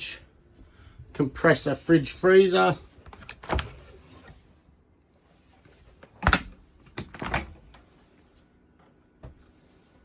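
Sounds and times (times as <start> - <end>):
clicks and knocks of door moving: 6.0 - 7.8
fridge door latch clicking: 6.2 - 7.6.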